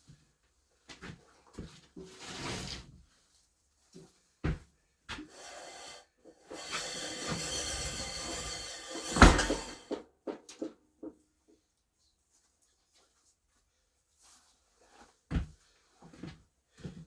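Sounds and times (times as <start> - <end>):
scraping: 5.3 - 10.0.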